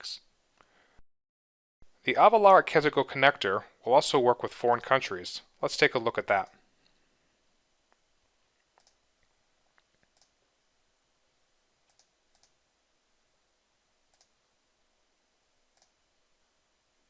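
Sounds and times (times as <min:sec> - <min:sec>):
faint computer mouse clicks: 0:08.7 - 0:09.0, 0:11.9 - 0:12.6, 0:14.1 - 0:14.3.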